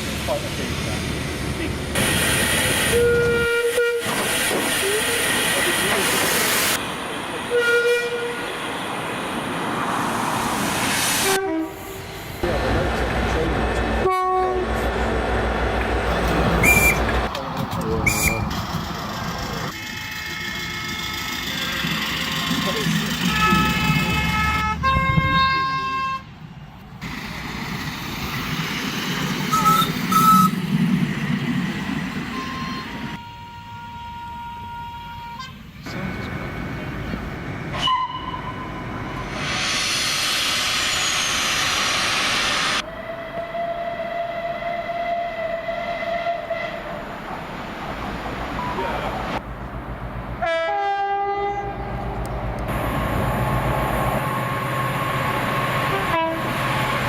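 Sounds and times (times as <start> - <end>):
moving train noise: 0.0 - 57.0
train horn: 2.9 - 4.2, 7.5 - 8.5, 11.2 - 11.8, 14.0 - 14.9, 32.3 - 35.6, 37.8 - 38.7, 43.1 - 47.0, 50.4 - 51.7, 55.9 - 57.0.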